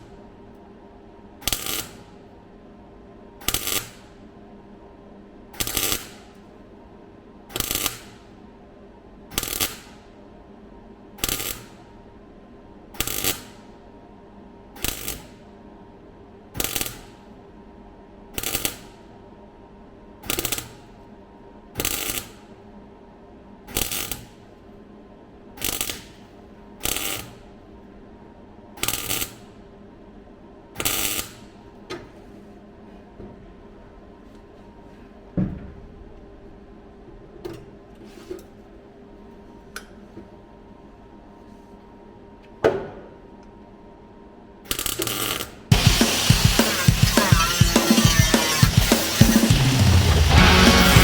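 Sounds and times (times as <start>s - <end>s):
welding crackle: 1.4s - 2.0s, 3.4s - 4.1s, 5.6s - 6.3s, 11.2s - 11.7s, 18.4s - 18.8s, 25.6s - 26.2s, 44.7s - 51.0s
welder hum: 44.7s - 51.0s.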